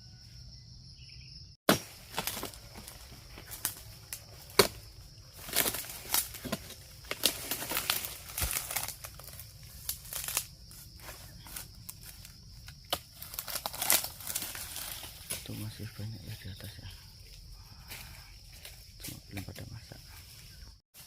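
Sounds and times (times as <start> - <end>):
crunching dry palm litter: 1.7 - 16.9.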